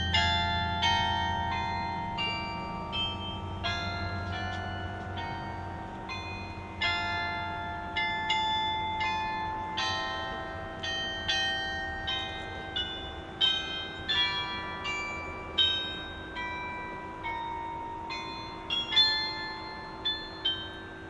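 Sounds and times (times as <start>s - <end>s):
tower bells playing melody: 0.0s - 21.0s.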